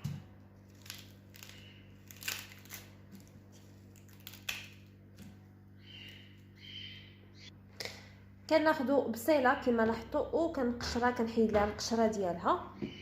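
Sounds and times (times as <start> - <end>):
steady low hum: 0.0 - 13.0
onion skin crackling and tearing: 0.6 - 6.5.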